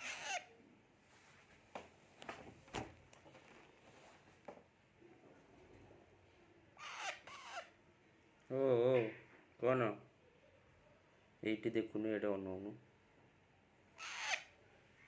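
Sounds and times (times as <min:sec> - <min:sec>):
parrot squawking: 0:00.0 - 0:00.6, 0:06.8 - 0:07.8, 0:14.0 - 0:14.6.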